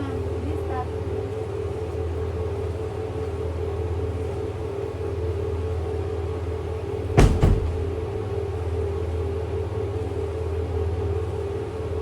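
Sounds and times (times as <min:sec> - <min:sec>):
low mechanical hum: 0:00.0 - 0:12.0
sharp knocks: 0:07.2 - 0:08.0.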